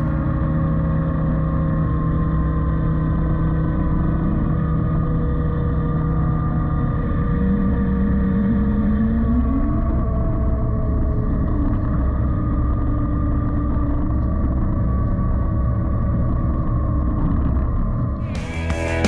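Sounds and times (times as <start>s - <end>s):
whine rising in pitch: 0.0s - 19.0s
excavator diesel engine: 18.2s - 19.0s.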